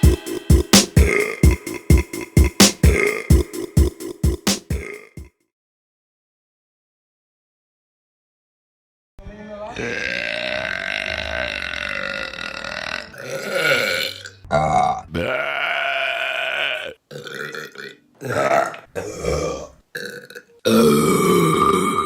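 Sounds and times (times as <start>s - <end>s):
woman burping: 9.9s - 14.2s, 18.2s - 22.0s.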